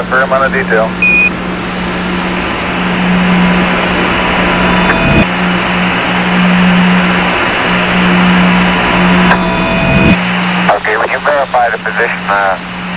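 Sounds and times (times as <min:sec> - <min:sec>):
radio static hiss and hum: 0:00.0 - 0:01.9, 0:08.3 - 0:12.9
short high beep: 0:01.0 - 0:01.3.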